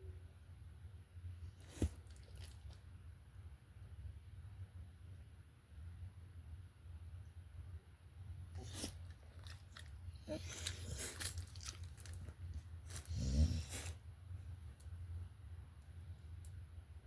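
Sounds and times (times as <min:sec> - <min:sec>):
chewing with crunching clicks: 0:01.6 - 0:02.9, 0:08.6 - 0:13.9.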